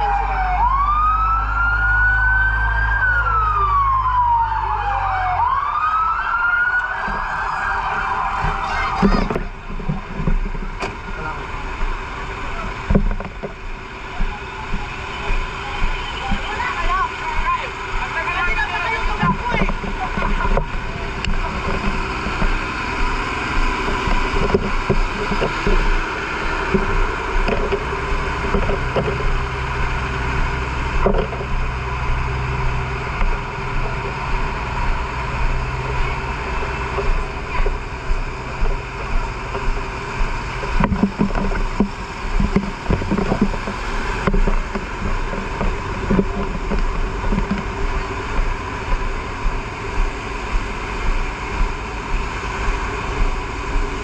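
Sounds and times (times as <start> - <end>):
engine running steadily: 0.0 - 54.0
voices: 6.3 - 9.6, 10.2 - 24.6
scattered knocks: 36.9 - 49.6.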